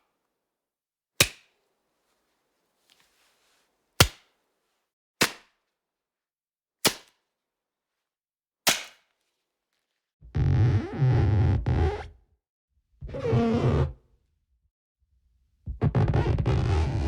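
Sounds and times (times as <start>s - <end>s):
distorted guitar-like effect: 10.3s - 12.1s, 13.0s - 13.9s, 15.7s - 17.0s.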